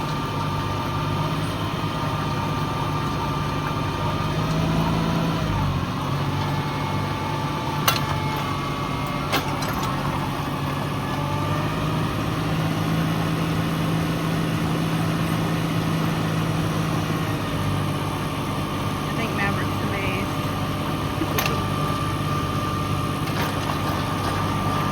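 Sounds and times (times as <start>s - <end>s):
tractor engine running: 0.0s - 24.9s.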